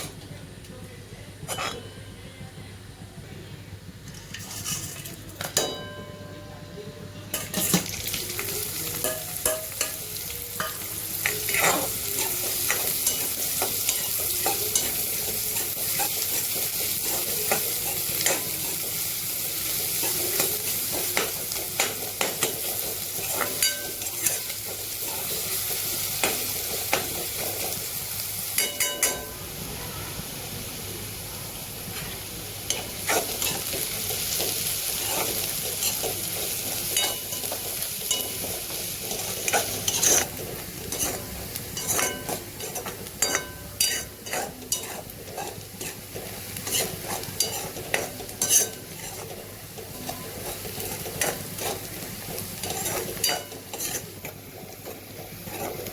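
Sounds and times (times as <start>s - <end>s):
food sizzling in a pan: 7.3s - 55.9s
spoon scraping and clinking on pan: 28.6s - 29.4s, 36.9s - 38.5s, 39.3s - 51.9s, 52.6s - 54.1s.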